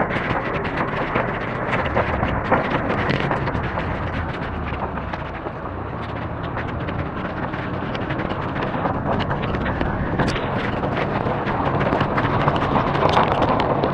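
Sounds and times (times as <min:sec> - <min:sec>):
rain roaring: 0:00.0 - 0:13.9
raindrops tapping: 0:00.0 - 0:13.9
wind on microphone: 0:00.0 - 0:13.9.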